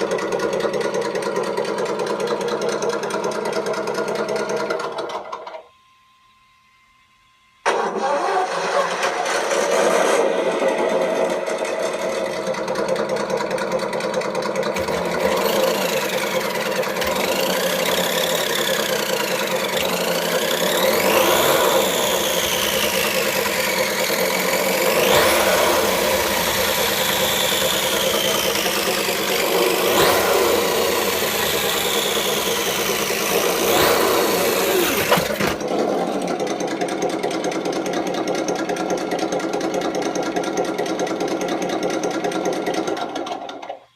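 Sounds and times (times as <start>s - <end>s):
simulated engine revving: 8.1s - 36.6s.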